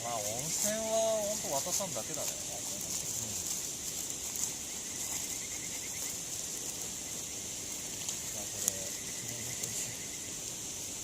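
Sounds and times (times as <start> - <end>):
campfire crackling: 0.0 - 11.0
insects chorus: 0.0 - 11.0.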